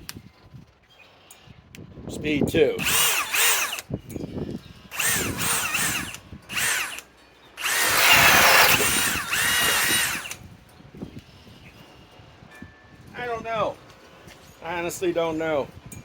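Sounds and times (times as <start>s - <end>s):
cordless drill boring into wood: 2.8s - 3.9s, 4.9s - 10.4s.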